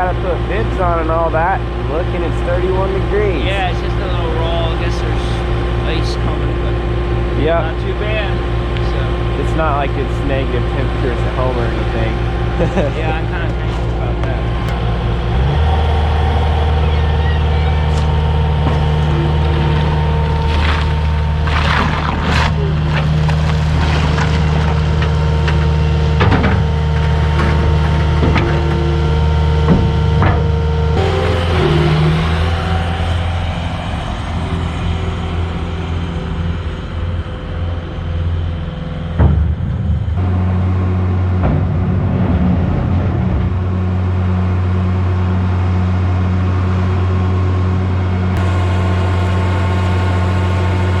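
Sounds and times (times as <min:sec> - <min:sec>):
tractor engine running: 0:00.0 - 0:51.0
clanks and knocks: 0:17.9 - 0:32.6, 0:39.1 - 0:40.3, 0:41.3 - 0:44.0.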